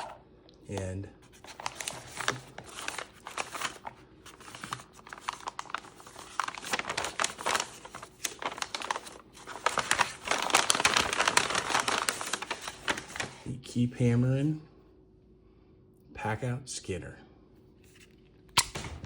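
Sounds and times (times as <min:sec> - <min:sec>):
packaging crinkling and rustling: 0:00.0 - 0:13.5.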